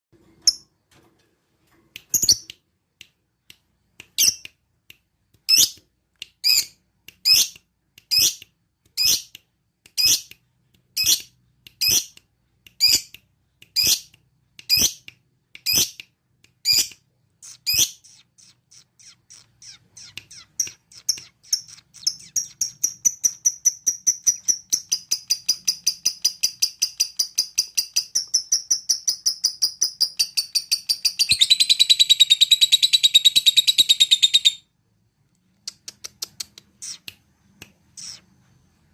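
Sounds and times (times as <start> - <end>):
lovebird shrill calls: 38.0 - 38.3.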